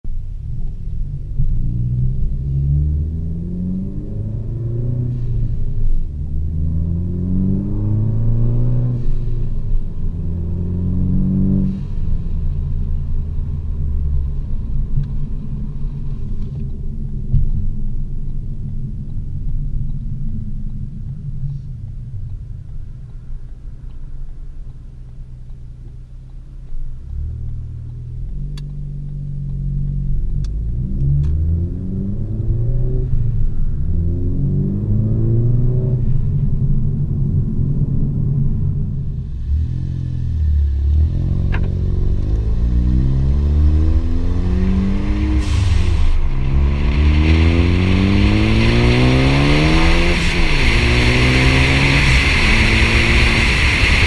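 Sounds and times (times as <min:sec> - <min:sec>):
car exhaust revving through gears: 0:01.0 - 0:21.1, 0:22.2 - 0:54.0.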